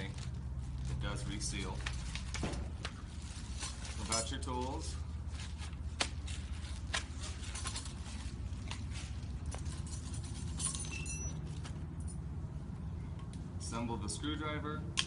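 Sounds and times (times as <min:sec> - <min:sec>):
metal hand tools clinking: 0:09.6 - 0:12.2.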